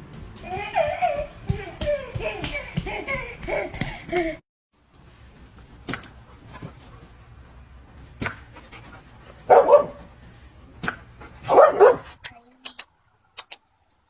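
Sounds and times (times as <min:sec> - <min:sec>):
dog barking: 0:09.5 - 0:10.1, 0:11.4 - 0:12.2.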